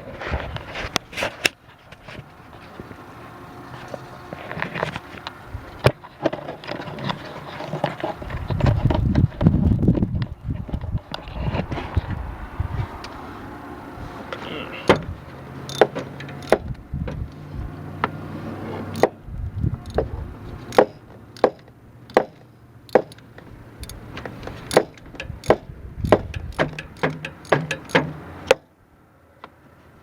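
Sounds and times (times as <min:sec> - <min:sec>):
ratchet wrench clicking: 0:15.7 - 0:16.7, 0:19.8 - 0:22.3, 0:22.9 - 0:28.1.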